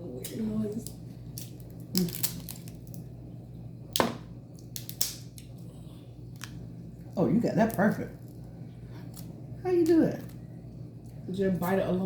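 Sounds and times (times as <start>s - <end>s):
crab shells cracking: 1.3s - 3.1s, 3.9s - 5.5s.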